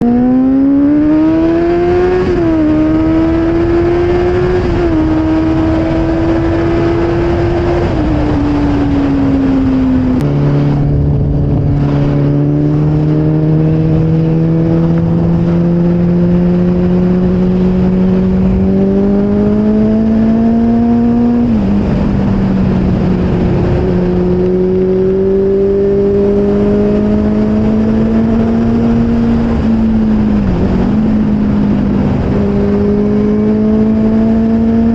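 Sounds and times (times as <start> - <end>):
motorcycle engine accelerating: 0.0 - 34.9
wind and road noise: 0.0 - 34.9.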